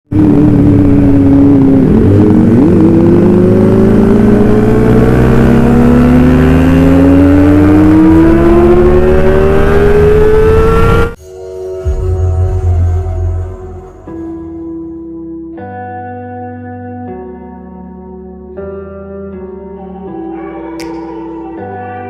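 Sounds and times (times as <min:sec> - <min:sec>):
motorcycle engine revving: 0:00.1 - 0:11.2.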